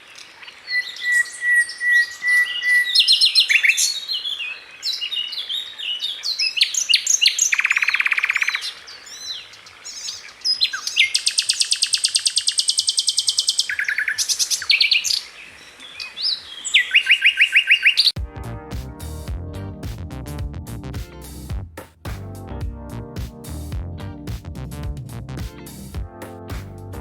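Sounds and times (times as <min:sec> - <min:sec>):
nightingale singing: 0:00.0 - 0:18.2
music: 0:18.2 - 0:27.0.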